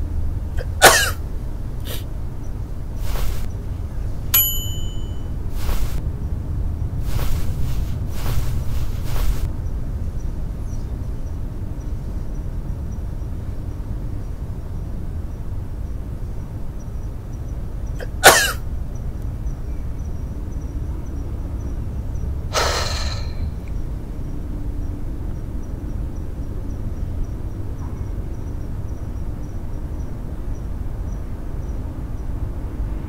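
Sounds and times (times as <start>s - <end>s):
steady low rumble: 0.0s - 22.6s
person sneezing: 0.6s - 1.2s, 18.0s - 18.6s.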